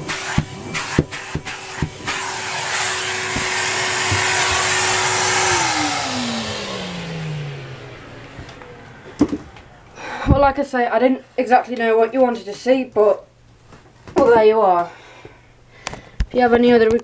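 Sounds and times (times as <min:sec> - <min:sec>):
vacuum motor winding down: 0:00.0 - 0:10.4
vacuum cleaner running: 0:00.0 - 0:10.6.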